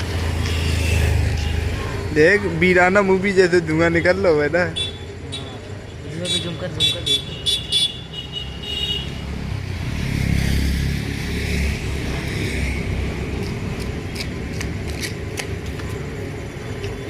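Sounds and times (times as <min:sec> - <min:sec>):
vehicle passing rumble: 0:09.0 - 0:17.0.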